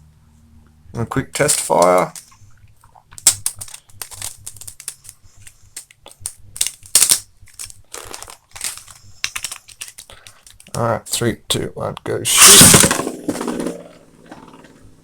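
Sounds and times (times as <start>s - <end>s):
spinning top parts clicking: 1.4s - 2.3s, 3.2s - 10.8s
plastic parts snapping: 3.2s - 10.8s.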